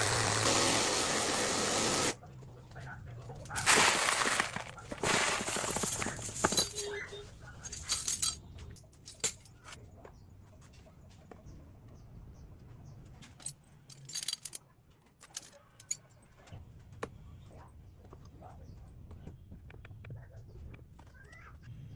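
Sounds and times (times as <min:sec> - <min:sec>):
harsh hissing noise: 0:00.0 - 0:02.2
metal parts clinking: 0:03.6 - 0:09.8, 0:13.3 - 0:14.6.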